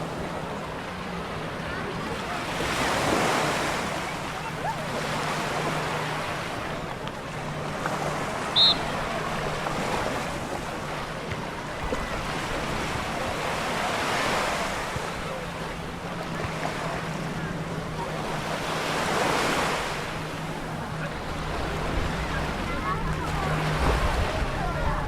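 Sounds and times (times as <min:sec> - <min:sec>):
small waves on sandy beach: 0:00.0 - 0:25.0
short high-pitched chirp: 0:08.5 - 0:08.9.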